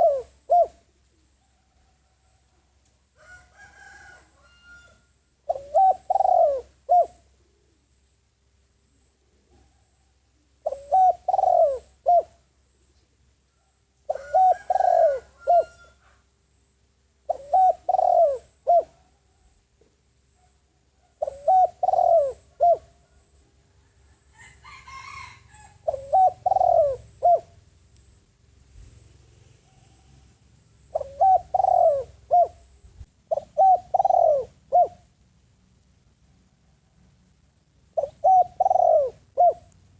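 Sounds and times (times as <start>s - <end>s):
dove cooing: 0.0s - 2.4s, 3.2s - 7.9s, 9.4s - 12.5s, 14.1s - 16.2s, 17.2s - 19.5s, 20.8s - 23.4s, 24.4s - 27.6s, 28.8s - 35.2s, 37.9s - 39.8s.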